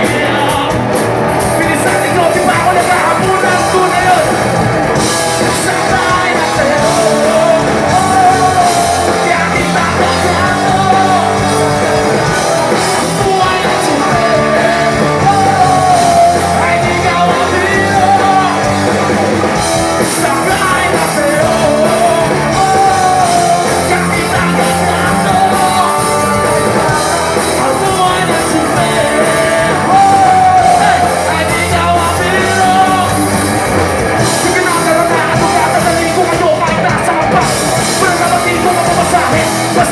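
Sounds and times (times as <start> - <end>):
lead singer singing: 0.0 - 39.9
live rock band playing: 0.0 - 39.9.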